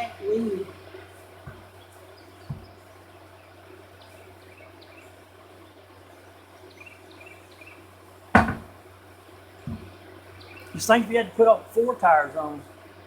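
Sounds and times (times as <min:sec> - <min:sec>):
steady low hum: 0:00.0 - 0:13.0
faint bird or insect chirps: 0:01.6 - 0:08.0, 0:09.6 - 0:10.8
loud sharp clunk: 0:08.4 - 0:08.8.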